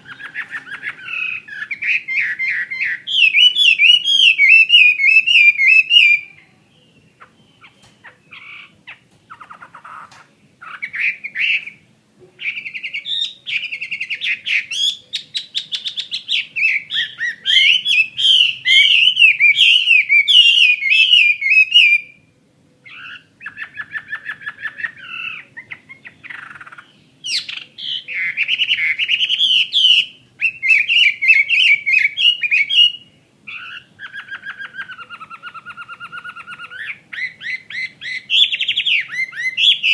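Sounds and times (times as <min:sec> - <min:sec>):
bird warbling with trills: 0:00.0 - 0:06.4.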